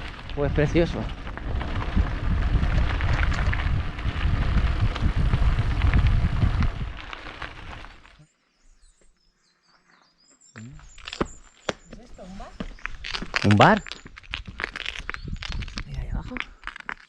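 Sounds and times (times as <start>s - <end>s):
wind buffeting microphone: 0.0s - 8.0s, 12.0s - 16.6s.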